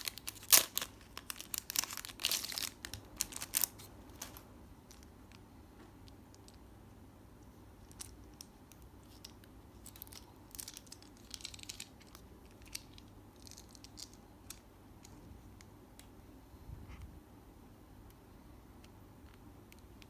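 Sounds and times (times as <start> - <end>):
crinkly rustles: 0.0 - 5.4, 7.8 - 15.3.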